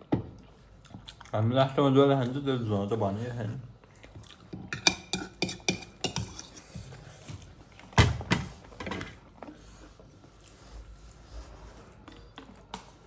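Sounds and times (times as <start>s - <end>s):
dishes and utensils clinking: 4.6s - 6.8s.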